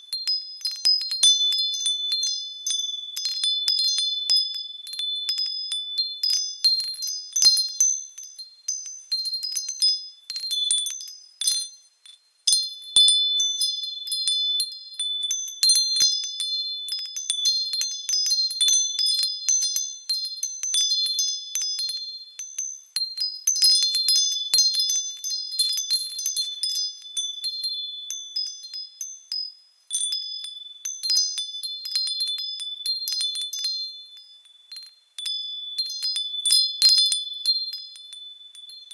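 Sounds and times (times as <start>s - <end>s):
small bells chiming: 0.0s - 38.9s.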